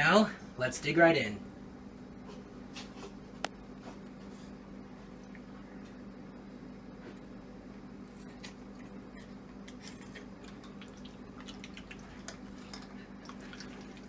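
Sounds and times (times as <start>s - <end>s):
person eating noodles: 8.1s - 14.0s.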